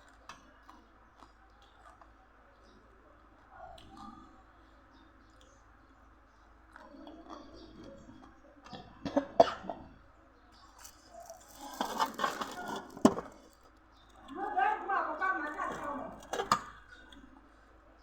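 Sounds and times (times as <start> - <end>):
eating noises: 0.0 - 18.0.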